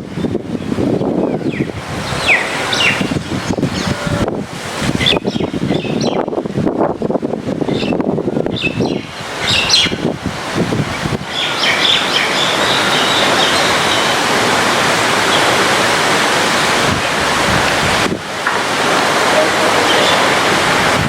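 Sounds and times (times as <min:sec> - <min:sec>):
rain hissing: 0:00.0 - 0:21.0
small birds chirping: 0:05.0 - 0:06.3, 0:07.7 - 0:10.0, 0:11.3 - 0:14.2.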